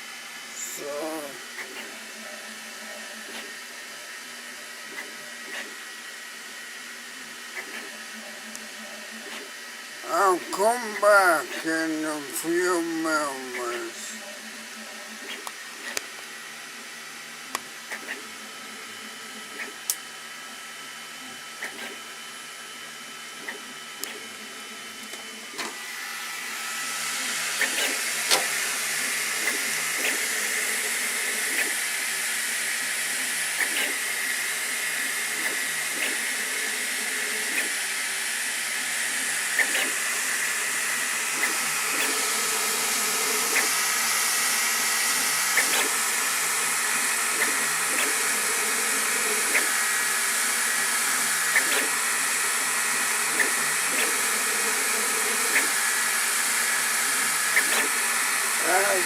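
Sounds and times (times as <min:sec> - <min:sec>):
fan hiss: 0:00.0 - 0:01.6, 0:10.0 - 0:14.2, 0:37.4 - 0:59.0
high motor whine: 0:00.0 - 0:59.0.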